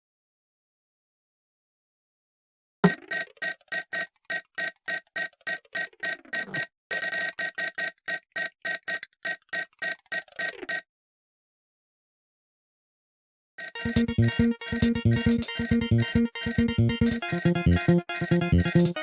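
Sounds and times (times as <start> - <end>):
mobile phone ringtone: 13.6 - 19.0.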